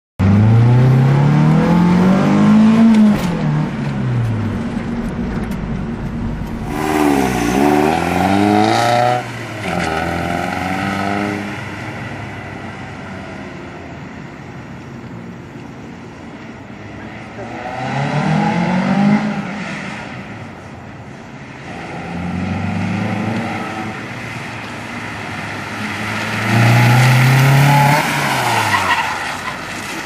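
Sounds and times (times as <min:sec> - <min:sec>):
car engine revving: 0:00.2 - 0:13.0, 0:21.8 - 0:29.9.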